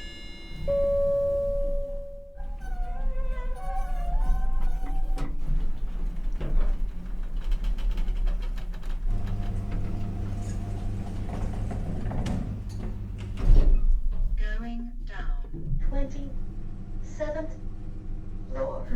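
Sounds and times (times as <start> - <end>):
elevator chime: 0.0 - 4.6
elevator motor hum: 0.0 - 18.9
mechanism clicks and rattles: 3.0 - 14.4.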